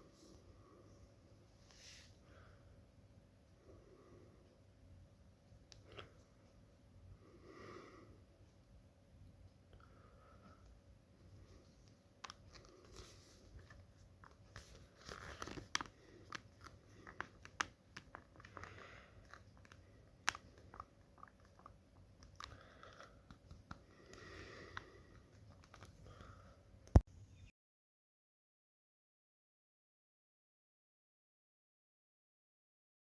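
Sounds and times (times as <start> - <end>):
faint clicks and taps: 11.5 - 27.0
crinkly plastic rustling: 12.2 - 21.7.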